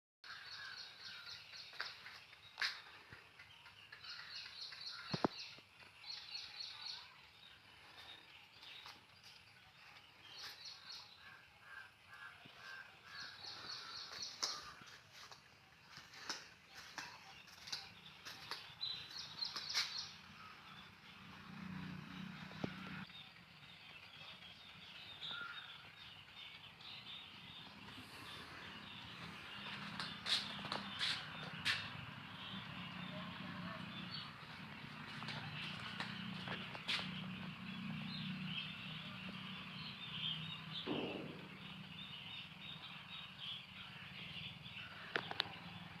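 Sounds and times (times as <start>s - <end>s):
poultry chirping: 26.5s - 46.0s
chickens calling: 27.6s - 46.0s.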